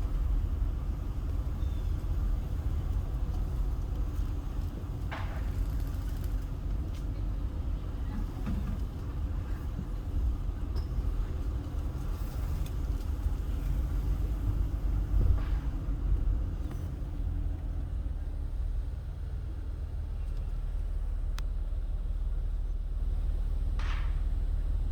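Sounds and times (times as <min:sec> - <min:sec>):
car engine and road noise: 0:00.0 - 0:24.9.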